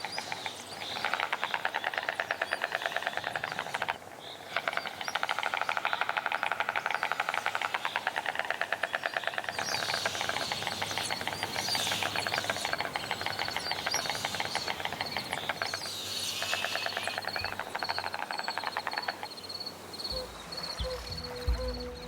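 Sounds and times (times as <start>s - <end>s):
high chirps: 20.0s - 22.0s
soft music: 20.1s - 22.0s.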